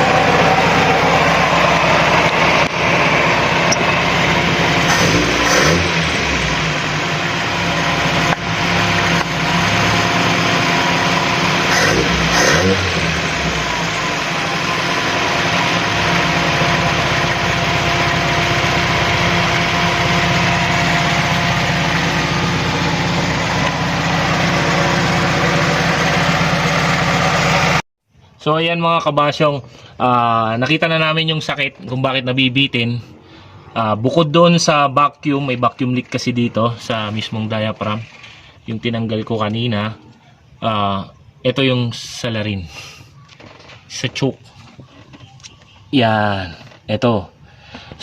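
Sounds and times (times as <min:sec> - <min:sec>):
car engine idling and revving: 0:00.0 - 0:27.8.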